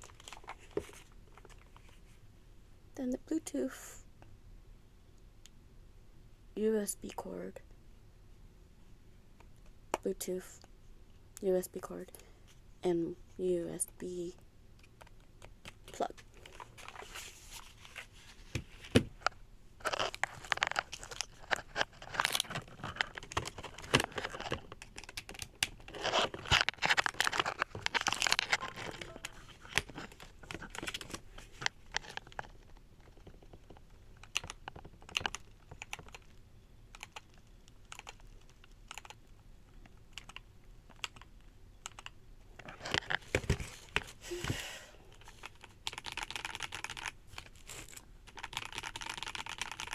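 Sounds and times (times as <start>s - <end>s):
clicks and knocks of handling: 14.8s - 36.2s
packaging crinkling and tearing: 19.8s - 33.8s.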